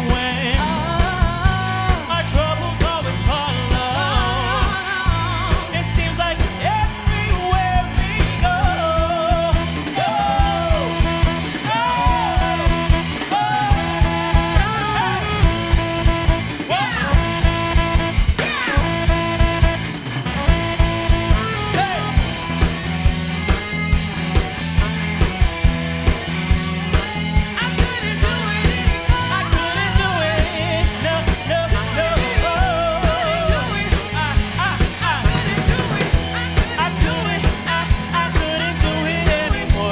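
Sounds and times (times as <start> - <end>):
drum kit steady beat: 0.0 - 39.9
live band playing: 0.0 - 39.9
lead melody bending in pitch: 10.8 - 25.4.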